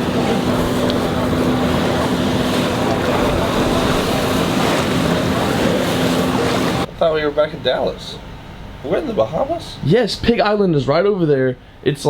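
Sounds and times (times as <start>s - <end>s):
wind buffeting microphone: 0.0s - 6.9s
water rushing past hull: 0.0s - 8.8s
motorboat engine humming: 0.0s - 9.8s.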